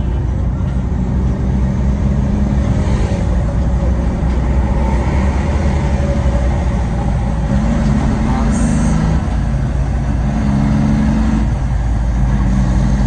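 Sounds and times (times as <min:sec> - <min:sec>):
car engine and road rumble: 0:00.0 - 0:13.0.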